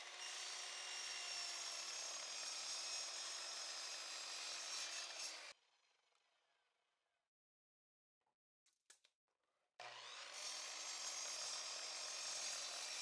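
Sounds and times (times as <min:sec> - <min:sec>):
power saw cutting wood: 0:00.0 - 0:05.5, 0:09.8 - 0:13.0.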